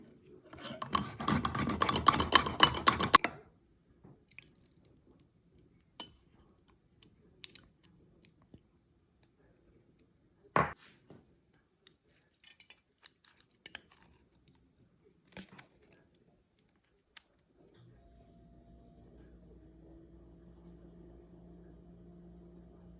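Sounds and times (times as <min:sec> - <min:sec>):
utensils and dishes clicking: 0:00.6 - 0:03.3.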